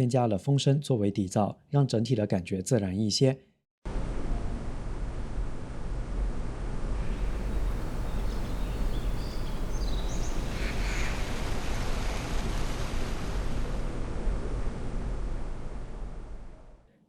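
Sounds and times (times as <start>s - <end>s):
waterfall: 7.0s - 14.7s
wind rushing: 7.0s - 15.6s
short bird chirps: 7.1s - 11.4s.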